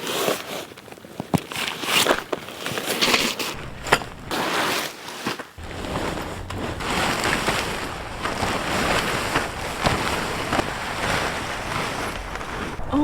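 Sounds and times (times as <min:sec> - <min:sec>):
wind buffeting microphone: 0:03.5 - 0:04.5, 0:05.6 - 0:13.0
wind rushing in snowstorm: 0:03.5 - 0:04.8, 0:05.6 - 0:13.0.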